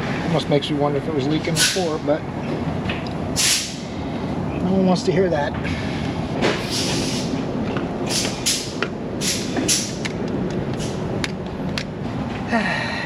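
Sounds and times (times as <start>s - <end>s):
repair shop background noise: 0.0s - 13.0s
short hissing bursts: 3.4s - 3.8s, 6.7s - 7.3s.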